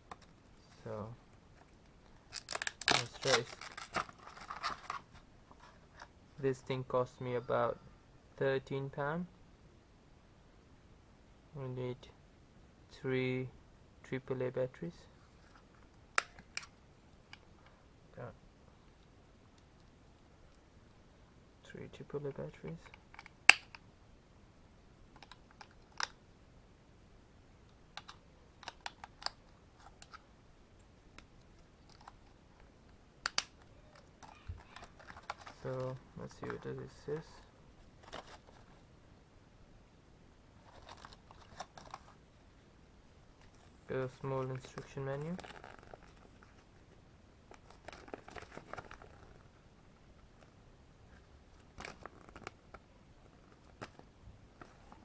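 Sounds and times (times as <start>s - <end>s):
packaging and paper crinkling: 2.3s - 6.0s, 34.2s - 37.0s, 40.6s - 42.2s, 45.2s - 46.7s, 47.5s - 49.5s.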